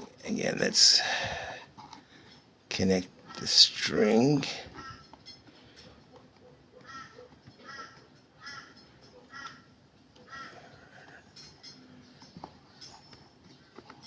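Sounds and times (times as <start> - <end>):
faint crow cawing: 4.7 - 5.2, 6.8 - 11.2.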